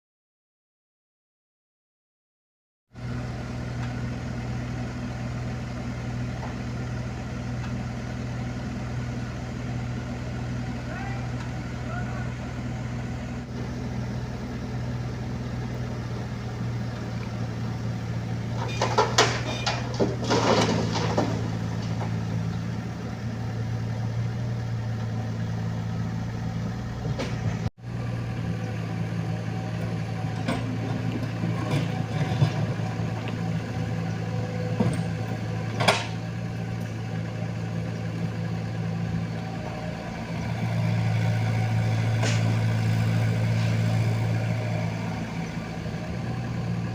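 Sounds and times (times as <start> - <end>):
diesel engine running: 3.0 - 46.9
sharp metal clanks and knocks: 18.6 - 22.1.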